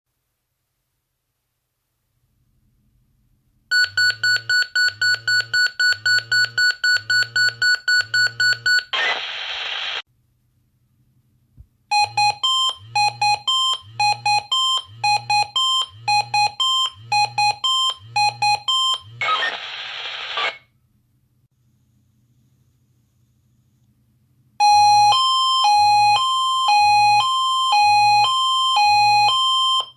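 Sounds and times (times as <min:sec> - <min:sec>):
pager beeps: 0:03.7 - 0:09.1
radio hiss: 0:08.9 - 0:10.0, 0:19.2 - 0:20.7
two-pitch alternating beeps: 0:11.9 - 0:19.1.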